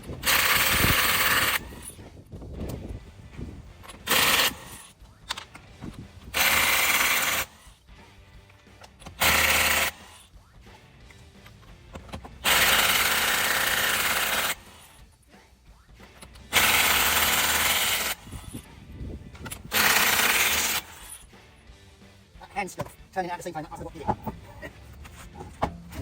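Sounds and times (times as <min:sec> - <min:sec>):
power tool whirring: 0:00.1 - 0:02.0, 0:03.8 - 0:04.9, 0:06.3 - 0:07.6, 0:09.1 - 0:10.2, 0:12.4 - 0:14.9, 0:16.5 - 0:18.6, 0:19.4 - 0:21.2.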